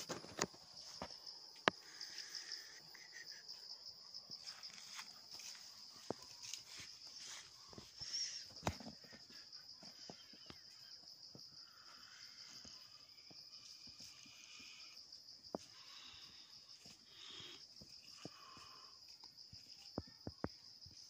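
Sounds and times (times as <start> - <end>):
high-pitched insect chorus: 0.0 - 21.0.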